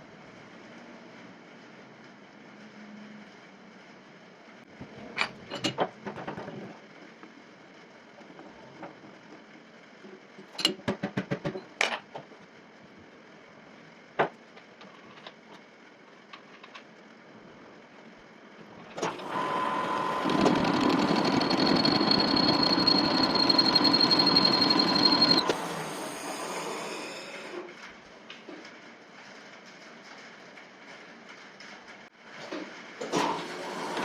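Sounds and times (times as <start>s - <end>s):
metal lathe whining: 19.0s - 27.6s.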